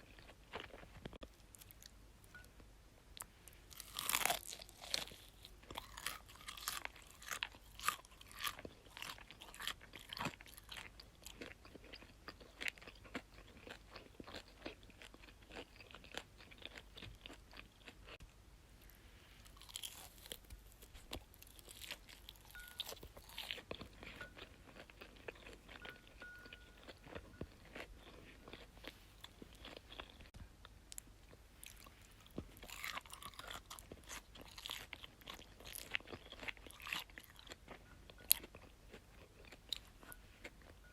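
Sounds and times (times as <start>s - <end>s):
chewing crisp food: 0.0s - 2.5s, 3.2s - 18.3s, 18.9s - 40.9s.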